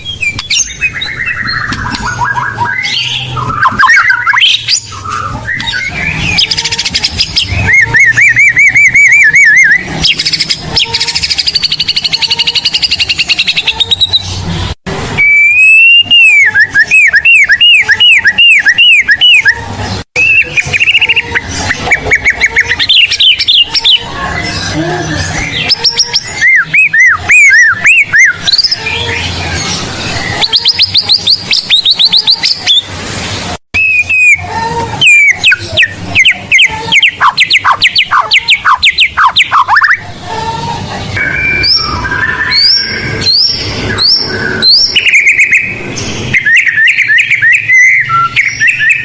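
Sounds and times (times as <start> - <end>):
songbird whistling and trilling: 0.0 - 14.3, 15.2 - 19.6, 20.2 - 32.9, 33.8 - 40.0, 41.2 - 49.0.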